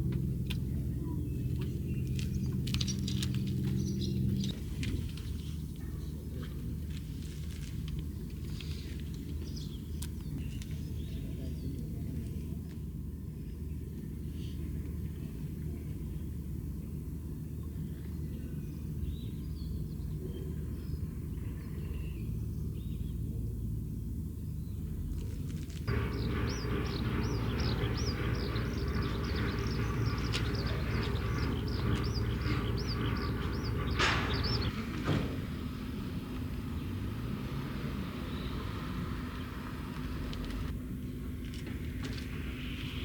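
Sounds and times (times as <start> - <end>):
low rumble: 25.8 - 43.0.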